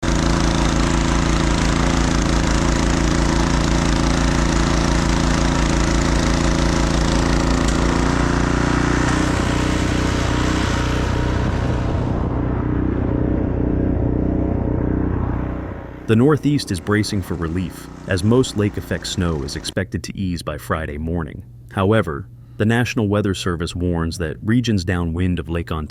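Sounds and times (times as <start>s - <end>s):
motor humming: 0.0s - 19.8s.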